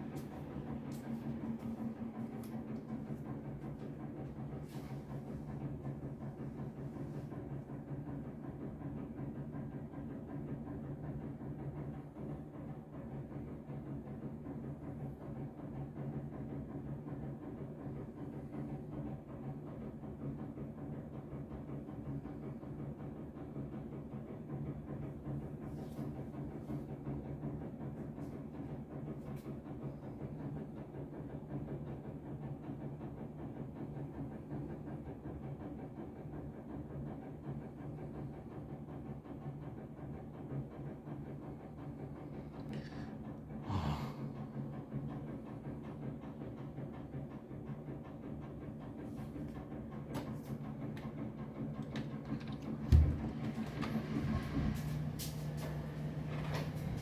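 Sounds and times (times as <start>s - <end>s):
low mechanical rumble and hum: 0.0s - 9.1s, 48.9s - 57.0s.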